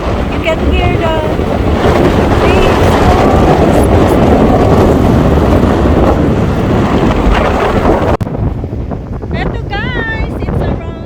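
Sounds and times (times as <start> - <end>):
waves washing on shore: 0.0 - 8.2
wind buffeting microphone: 0.0 - 11.0.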